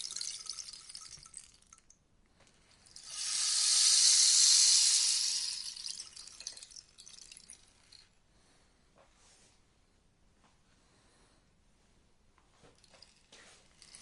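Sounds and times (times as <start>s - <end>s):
rainstick cascade: 0.0s - 1.9s, 2.7s - 8.0s.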